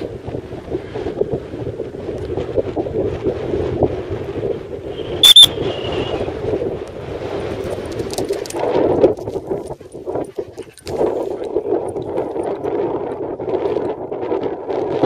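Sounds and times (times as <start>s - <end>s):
wind noise on microphone: 0.0s - 15.0s
high-pitched dog whistle peeps: 5.0s - 6.2s.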